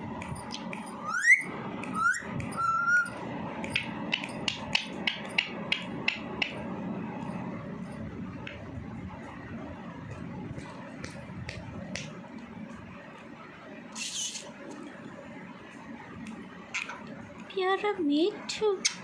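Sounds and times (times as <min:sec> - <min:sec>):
parrot whistling: 0:01.0 - 0:03.2
sharp taps: 0:03.6 - 0:06.6.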